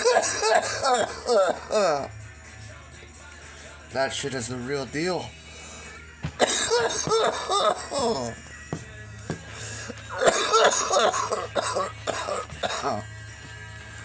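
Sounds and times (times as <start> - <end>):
person coughing hard: 0.0 - 2.1, 6.4 - 8.4, 9.6 - 13.1.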